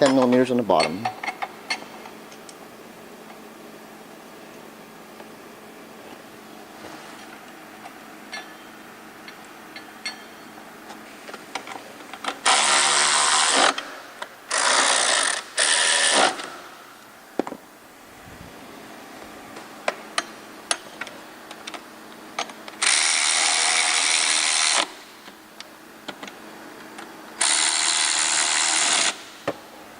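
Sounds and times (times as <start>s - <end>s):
power tool driving bolts: 11.6s - 16.8s, 22.4s - 25.0s, 27.4s - 29.5s.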